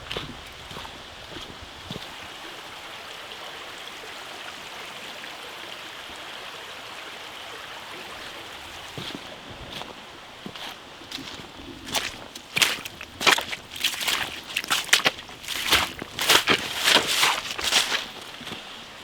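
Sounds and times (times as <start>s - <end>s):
footsteps on path: 0.0s - 2.2s, 9.0s - 19.0s
stream water rushing: 0.0s - 19.0s.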